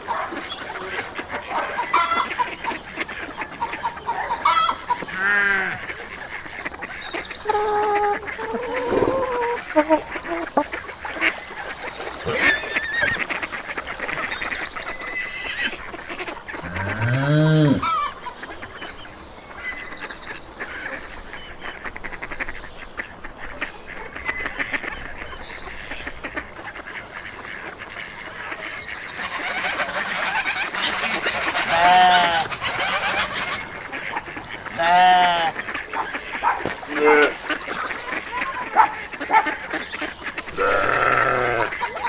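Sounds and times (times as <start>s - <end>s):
geese honking: 0.0s - 18.6s, 21.6s - 42.0s
fowl and bird calls: 0.0s - 42.0s
loud low drawn-out animal call: 7.3s - 10.7s, 12.0s - 13.3s, 16.5s - 18.2s, 29.3s - 33.9s, 34.6s - 37.9s, 40.4s - 41.9s.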